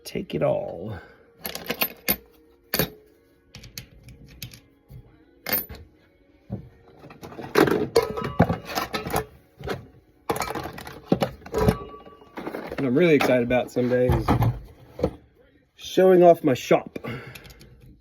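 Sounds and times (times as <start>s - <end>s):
metal parts clinking and clattering: 1.4s - 4.7s, 5.4s - 5.9s, 7.0s - 15.1s.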